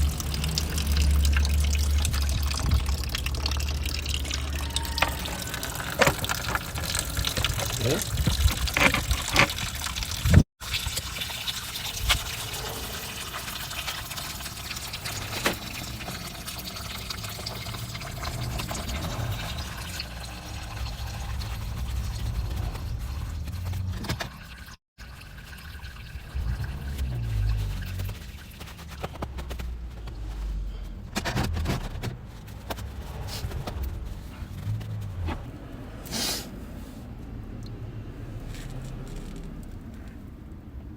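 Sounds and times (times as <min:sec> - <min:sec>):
liquid pouring and trickling: 0:00.0 - 0:30.4.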